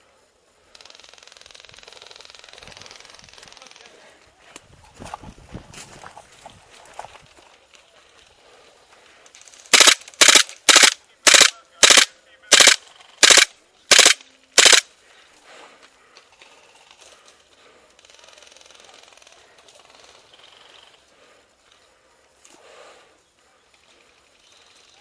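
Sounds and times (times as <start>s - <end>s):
airsoft rifle firing bursts: 9.7s - 14.9s.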